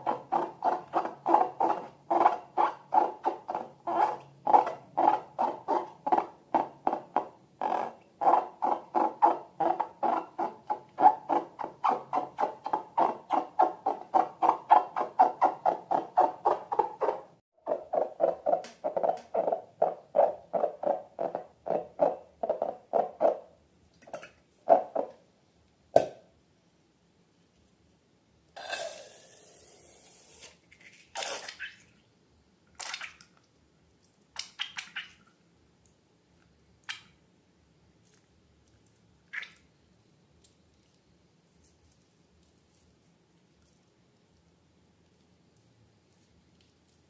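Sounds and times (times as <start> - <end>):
slime squelching: 38.0 - 47.0.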